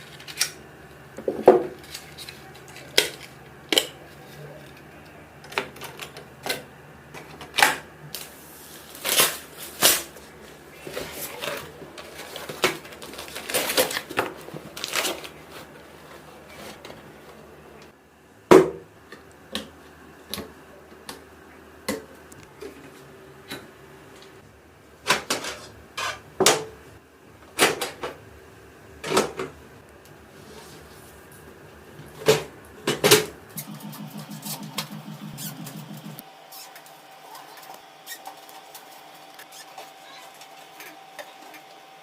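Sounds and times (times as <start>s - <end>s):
faint steady hum: 0.0s - 42.0s
low rhythmic buzz: 33.5s - 38.1s.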